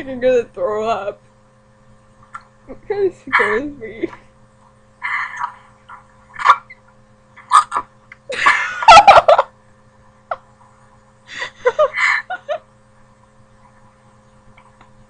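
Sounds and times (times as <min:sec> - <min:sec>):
girl laughing: 0:02.7 - 0:04.2, 0:07.4 - 0:09.5, 0:11.3 - 0:12.7
girl hiccuping: 0:03.3 - 0:03.7.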